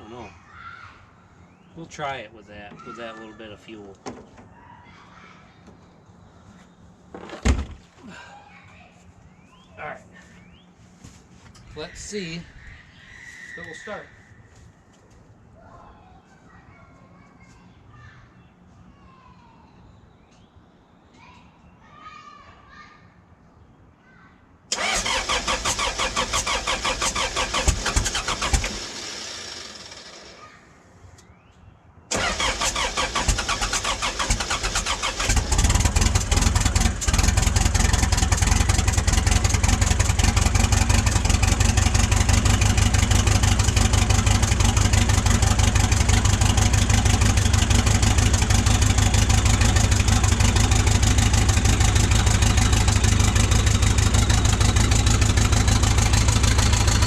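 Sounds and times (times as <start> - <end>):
diesel engine cranking: 24.7 - 30.4, 32.1 - 57.0
diesel engine idling: 24.7 - 30.4, 32.1 - 57.0.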